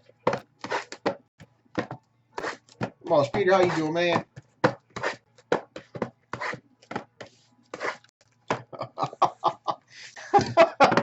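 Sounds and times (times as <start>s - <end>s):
man laughing in rhythmic bursts: 8.7s - 11.0s.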